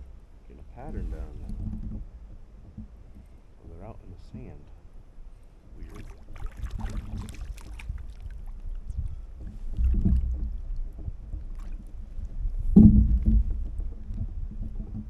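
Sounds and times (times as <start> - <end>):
kayak hull knocking on water: 5.8 - 15.0.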